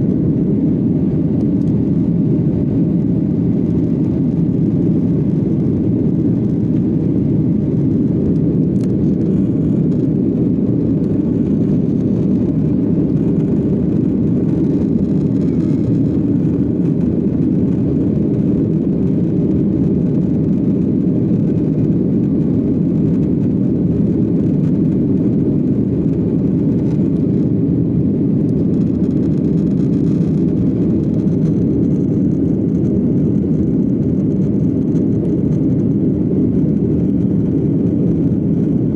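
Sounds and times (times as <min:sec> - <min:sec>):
jet engines in cabin: 0:00.0 - 0:38.9.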